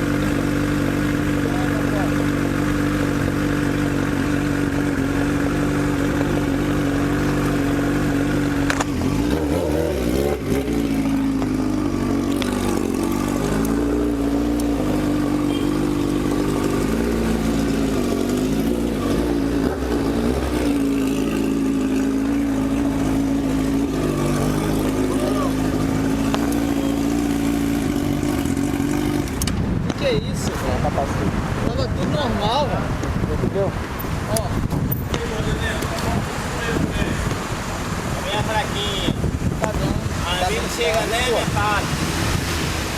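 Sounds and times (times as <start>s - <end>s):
motorcycle engine revving: 0.0s - 42.9s.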